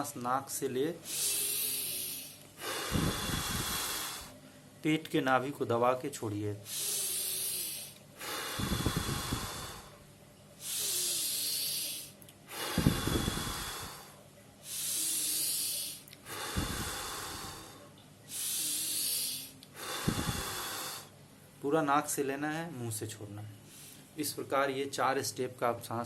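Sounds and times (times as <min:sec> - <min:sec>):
man inhaling through nose: 0:01.0 - 0:04.4, 0:06.7 - 0:10.0, 0:10.6 - 0:21.2
man exhaling forcefully: 0:01.1 - 0:04.3, 0:06.7 - 0:09.9, 0:10.6 - 0:14.1, 0:14.7 - 0:21.1.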